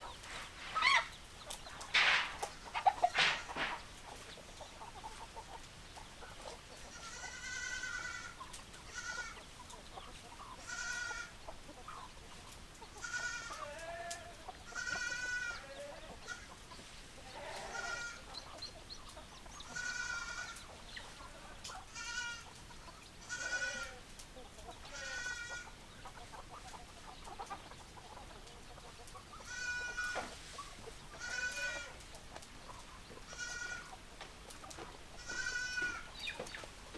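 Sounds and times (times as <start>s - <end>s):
farm animal squawking: 0.4s - 1.2s, 1.9s - 3.8s, 35.2s - 36.2s.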